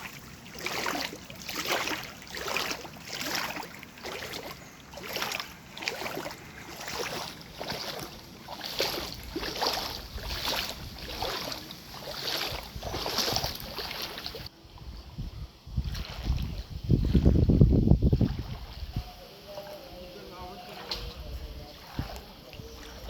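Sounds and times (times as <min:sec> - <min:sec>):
splashing in water: 0:00.0 - 0:14.5, 0:15.8 - 0:23.0
wind buffeting microphone: 0:05.9 - 0:19.2, 0:20.8 - 0:23.0.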